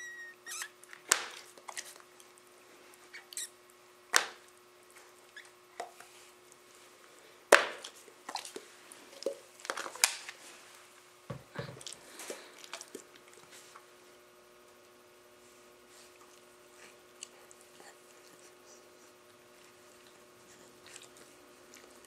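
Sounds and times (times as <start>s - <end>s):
brief squeaky noises: 0.0s - 0.8s.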